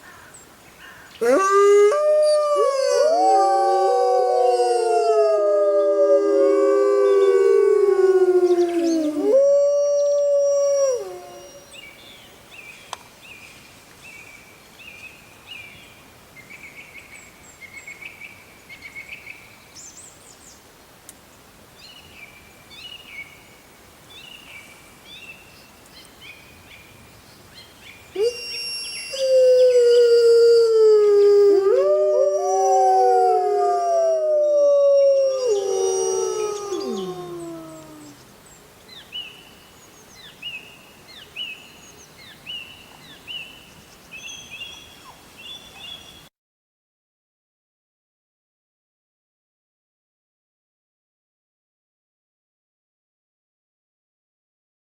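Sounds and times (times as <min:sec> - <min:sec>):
wolves howling: 0:01.2 - 0:11.6, 0:28.2 - 0:38.2.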